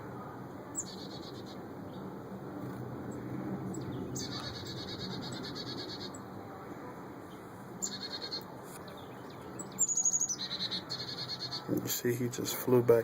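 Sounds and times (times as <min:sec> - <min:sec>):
songbird singing rapid trills: 0:00.7 - 0:02.2, 0:03.1 - 0:06.3, 0:07.3 - 0:13.0.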